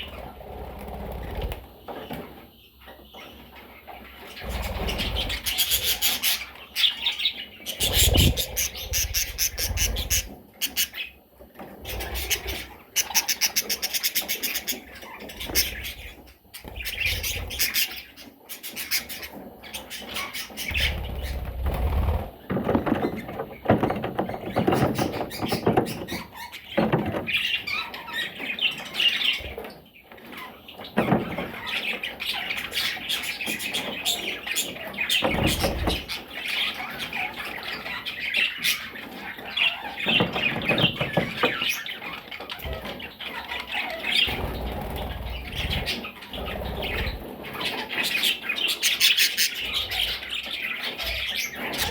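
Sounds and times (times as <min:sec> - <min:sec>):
baby parrots squawking: 0:04.2 - 0:11.2, 0:11.8 - 0:21.4, 0:41.0 - 0:51.9
wing flapping: 0:07.8 - 0:10.4, 0:20.7 - 0:22.5.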